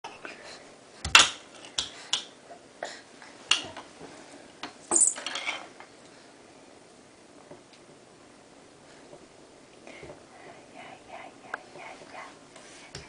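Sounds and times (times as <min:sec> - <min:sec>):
kitchen objects clattering: 0:04.9 - 0:05.8.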